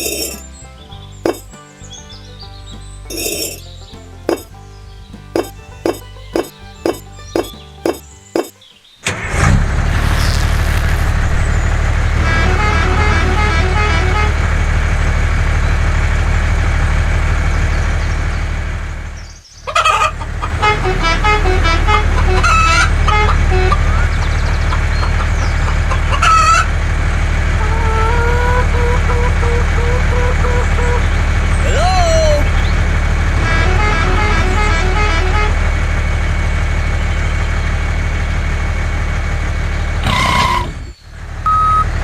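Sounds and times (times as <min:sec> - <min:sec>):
chickens clucking: 0:00.0 - 0:09.2, 0:19.6 - 0:35.3, 0:40.0 - 0:42.0
vehicle engine running: 0:00.0 - 0:42.0.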